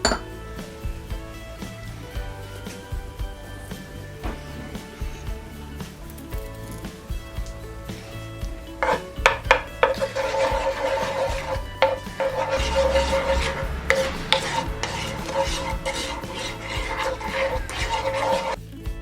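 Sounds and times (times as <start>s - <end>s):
background music: 0.0s - 19.0s
utensil scraping in a pan: 7.6s - 18.6s.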